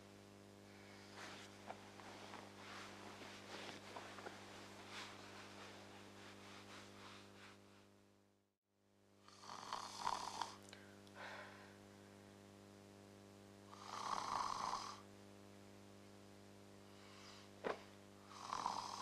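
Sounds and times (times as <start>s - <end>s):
low electrical hum: 0.0s - 19.0s
person snoring: 9.3s - 11.6s, 13.7s - 15.1s, 16.8s - 19.0s.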